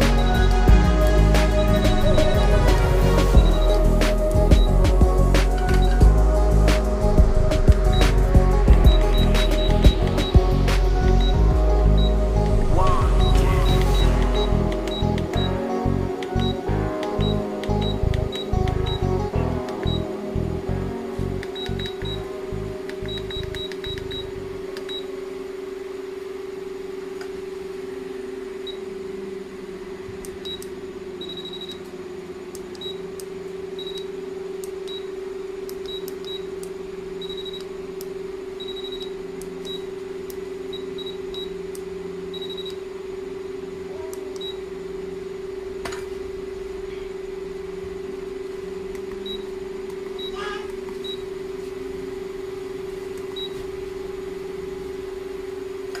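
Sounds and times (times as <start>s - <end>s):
click: 22.9s - 24.2s, 32.5s - 33.3s, 35.7s - 36.8s, 44.1s - 44.5s.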